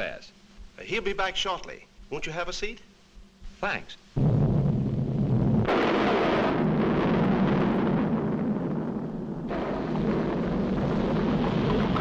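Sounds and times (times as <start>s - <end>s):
deep rumbling eruption: 4.2s - 12.0s.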